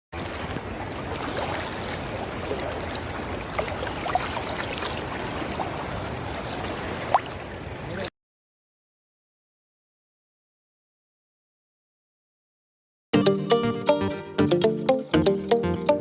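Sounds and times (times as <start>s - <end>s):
moving water: 0.2s - 8.0s
short chirps and ticks: 13.2s - 16.0s.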